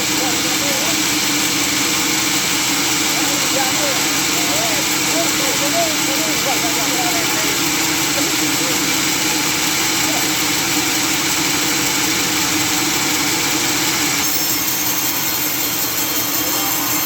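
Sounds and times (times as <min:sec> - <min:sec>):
sawmill machinery drone: 0:00.0 - 0:17.0.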